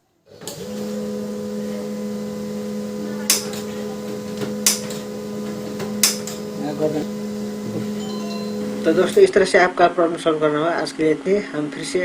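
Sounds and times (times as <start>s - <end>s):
laser printer humming: 0.7s - 9.3s.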